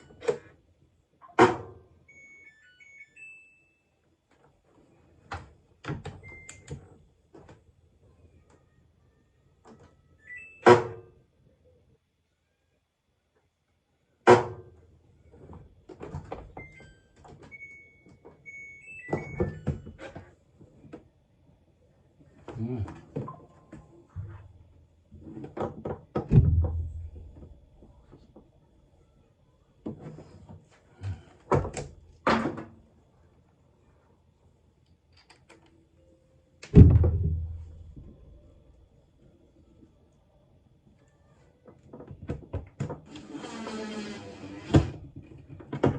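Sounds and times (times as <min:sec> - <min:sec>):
washing machine door clunks: 0:26.1 - 0:27.4, 0:36.6 - 0:37.7
heavy door thud: 0:26.2 - 0:27.5, 0:36.7 - 0:38.2
washing machine clunks and clicks: 0:36.6 - 0:37.7.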